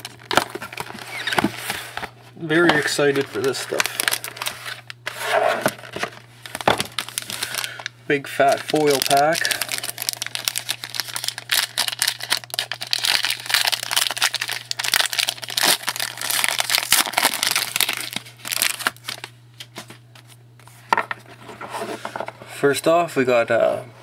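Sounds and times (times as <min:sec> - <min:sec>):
foil wrapper crinkling: 0:00.0 - 0:20.3.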